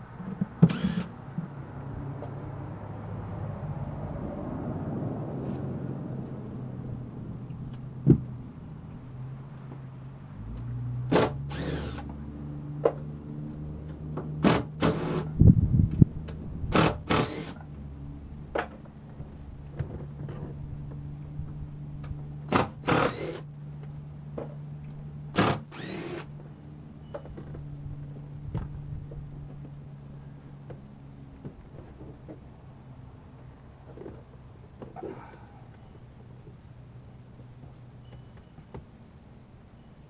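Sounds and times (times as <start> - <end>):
short scraping rasps: 11.2 - 12.1.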